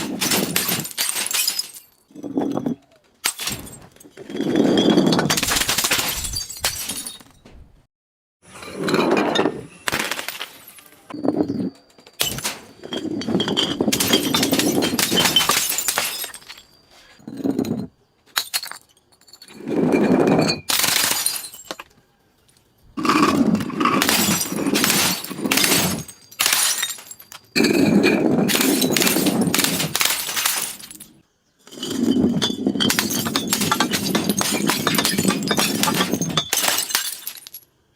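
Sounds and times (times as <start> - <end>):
glass breaking and crunching: 0.0 - 2.1, 3.2 - 4.0, 4.8 - 7.4, 12.0 - 16.8, 20.5 - 21.9, 23.0 - 37.7.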